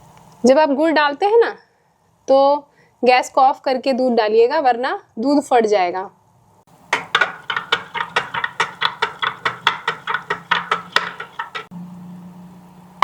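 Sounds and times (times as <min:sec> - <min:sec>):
spoon clinking in pan: 0:07.0 - 0:11.7.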